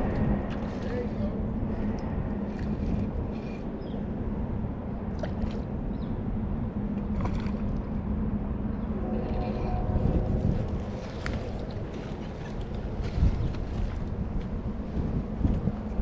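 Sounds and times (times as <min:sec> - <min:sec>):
distant traffic: 0:00.0 - 0:15.0
flowing river water: 0:00.0 - 0:15.1.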